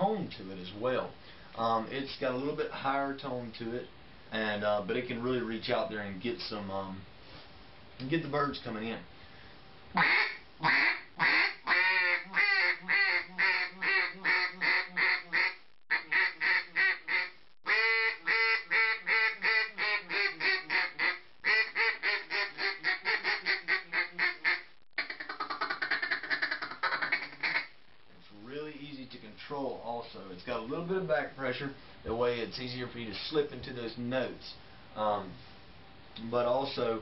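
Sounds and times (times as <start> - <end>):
duck call quacks: 10.0 - 27.7.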